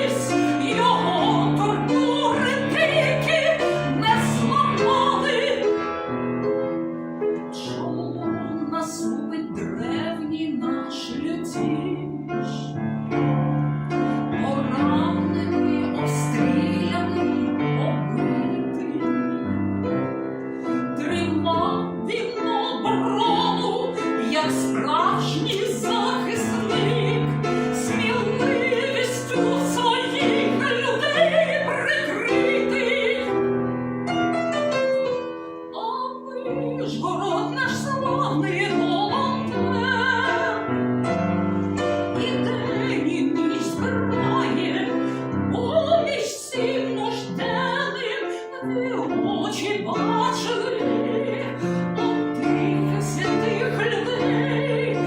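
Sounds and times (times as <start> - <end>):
piano accompaniment: 0.0 - 55.0
operatic singing voice: 21.0 - 33.4, 42.1 - 55.0.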